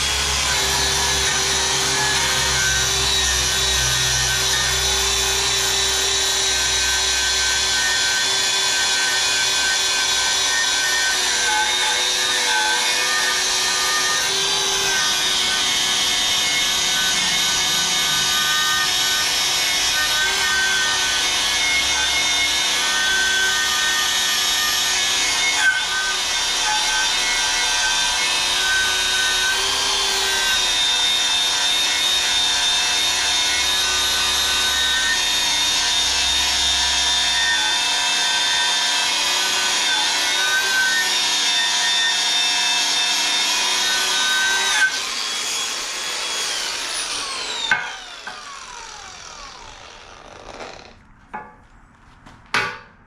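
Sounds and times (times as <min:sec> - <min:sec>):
power tool grinding steel: 0:00.0 - 0:51.0.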